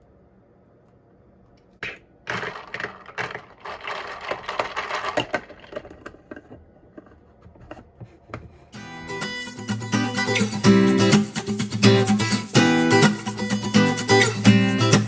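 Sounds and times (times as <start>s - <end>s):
ice cubes clattering into a cup: 2.3s - 6.3s.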